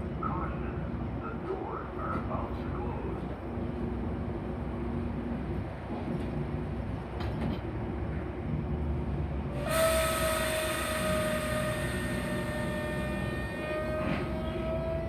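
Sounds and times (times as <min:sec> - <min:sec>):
train rumbling along rails: 0:00.0 - 0:15.0
train horn blast: 0:09.6 - 0:15.0.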